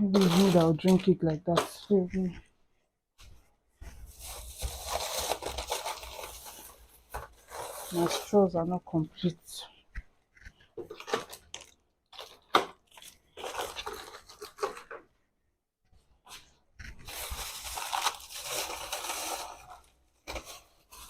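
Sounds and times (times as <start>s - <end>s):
plastic packaging crinkling: 0.0s - 1.9s, 4.1s - 8.6s, 10.8s - 15.1s, 17.0s - 21.0s.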